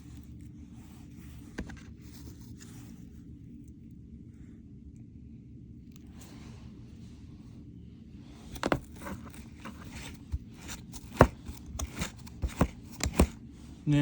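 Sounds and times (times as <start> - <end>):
plastic scraping: 0.9 - 2.8, 8.4 - 13.5.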